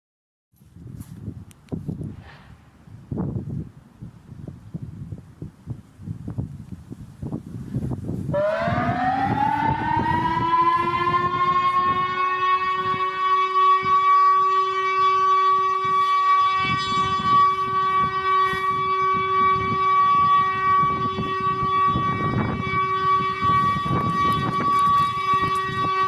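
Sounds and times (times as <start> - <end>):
siren steady tone: 8.2 - 26.0.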